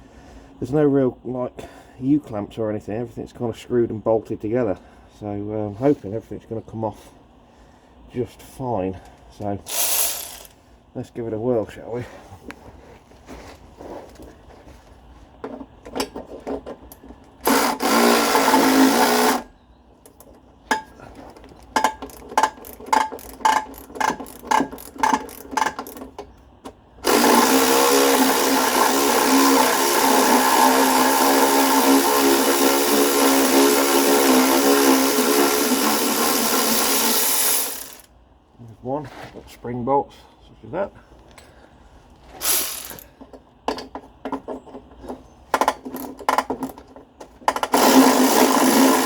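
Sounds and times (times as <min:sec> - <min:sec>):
power tool motor running: 0:09.7 - 0:10.5, 0:17.4 - 0:19.5, 0:27.0 - 0:38.1, 0:42.4 - 0:43.0, 0:47.6 - 0:49.0.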